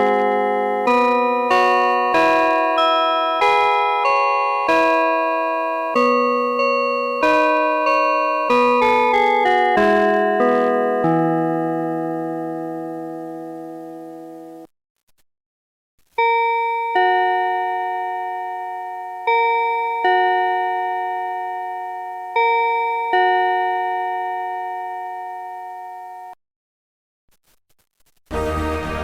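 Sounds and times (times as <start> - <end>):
two-note clock chime: 0.0 - 14.7, 16.2 - 26.4
march music: 28.3 - 29.0.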